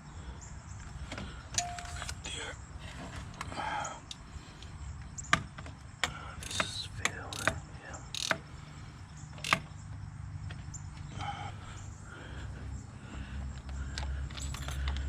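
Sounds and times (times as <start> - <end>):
low steady hum: 0.0 - 15.0
tools and parts clicking: 1.1 - 2.3, 5.2 - 8.4, 9.4 - 9.8, 13.6 - 15.0.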